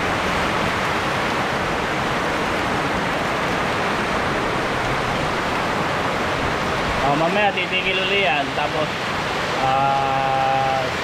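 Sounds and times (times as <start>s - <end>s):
heavy rain: 0.0s - 11.0s.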